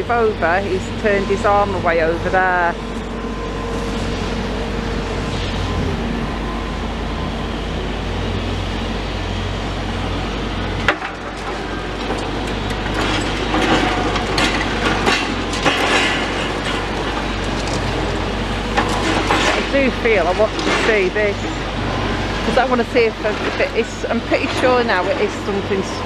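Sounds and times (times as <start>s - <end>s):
excavator engine running: 0.0s - 26.0s
concrete clattering and cracking: 10.9s - 21.5s.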